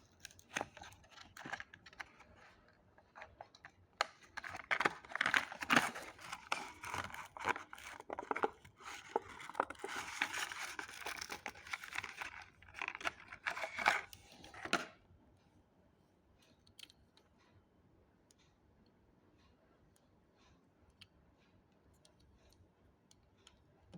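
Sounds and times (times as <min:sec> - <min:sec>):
packaging tearing and crumpling: 0:04.2 - 0:14.1.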